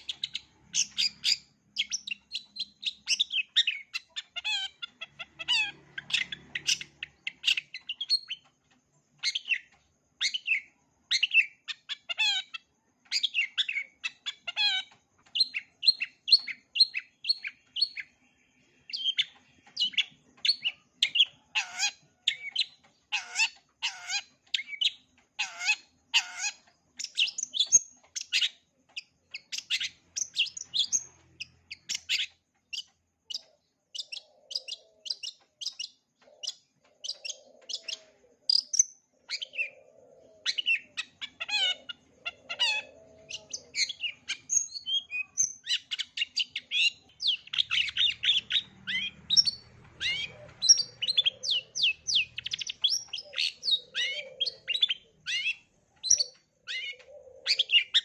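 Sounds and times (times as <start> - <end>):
shrike singing: 0.0 - 8.5, 26.2 - 58.0.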